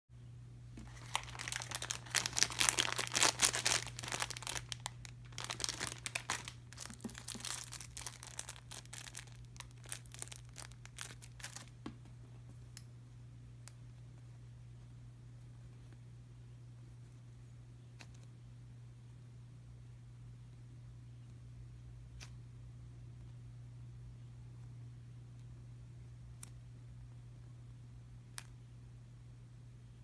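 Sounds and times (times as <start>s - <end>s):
packaging crinkling and tearing: 0.8s - 11.8s.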